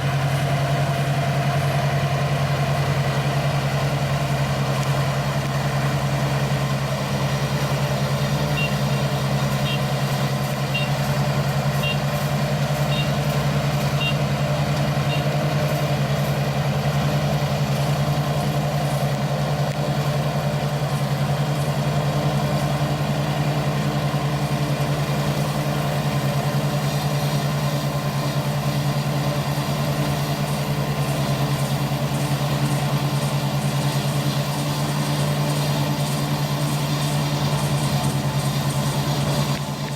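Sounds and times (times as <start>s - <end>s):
harvester engine hum: 0.0s - 39.9s
faint high beep: 8.5s - 9.0s.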